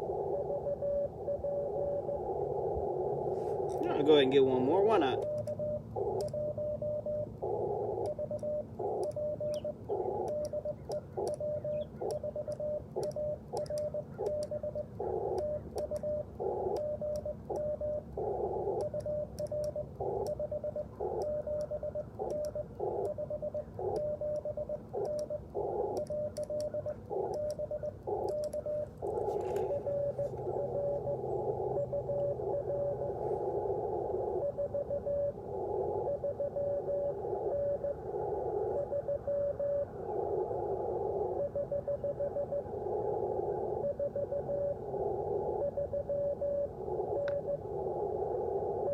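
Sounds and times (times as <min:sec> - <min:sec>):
radio receiver hiss: 0:00.0 - 0:06.5, 0:22.2 - 0:23.1, 0:23.8 - 0:41.7, 0:42.4 - 0:48.9
morse code tone: 0:03.5 - 0:33.2.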